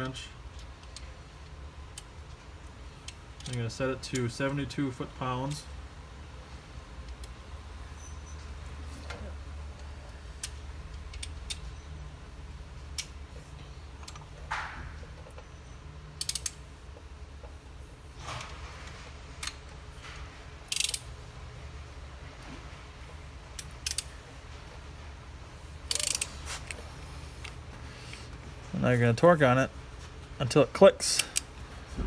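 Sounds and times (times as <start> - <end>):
steady low hum: 0.0 - 32.0
torque wrench clicks: 16.2 - 16.6, 20.7 - 21.0, 23.6 - 24.1, 25.9 - 26.4.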